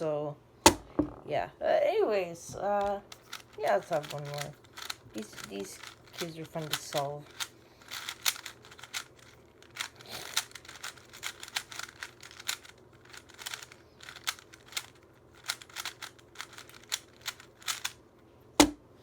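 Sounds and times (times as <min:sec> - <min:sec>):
plastic puzzle cube clicking: 0:02.8 - 0:18.0.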